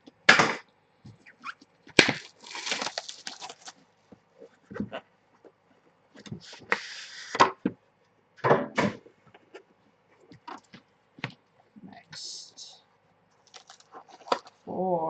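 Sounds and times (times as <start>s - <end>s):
packaging rustling scrape: 2.0s - 3.8s.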